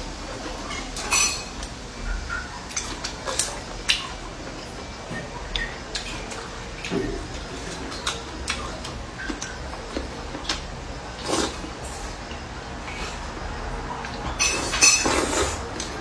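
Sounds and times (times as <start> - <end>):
bowls and utensils clinking: 0.7 - 1.7, 14.0 - 16.0.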